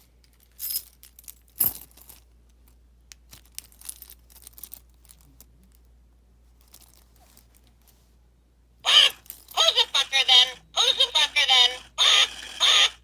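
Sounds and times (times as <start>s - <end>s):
light clicks and crinkles: 0.1s - 8.2s.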